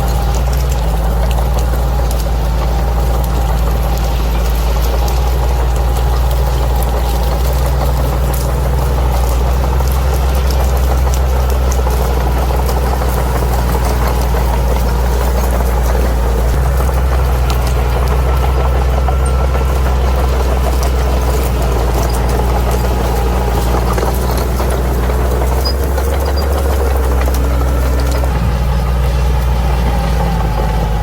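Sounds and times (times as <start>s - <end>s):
faint clicks: 0.0s - 28.4s
diesel engine running: 0.0s - 31.0s.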